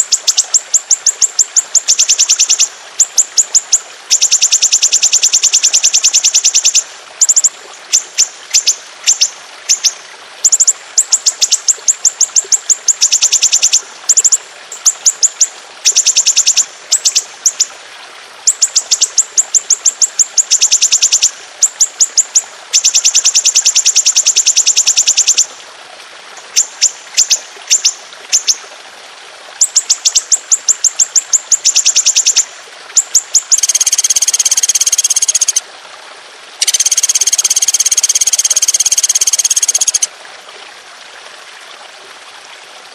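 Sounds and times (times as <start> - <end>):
songbird rolling trills: 33.4 - 35.6, 36.6 - 40.1.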